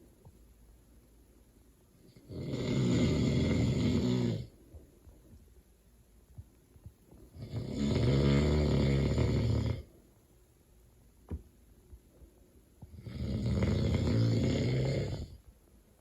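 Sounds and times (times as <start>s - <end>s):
man snoring loudly: 2.2s - 4.5s, 7.4s - 9.9s, 13.0s - 15.4s.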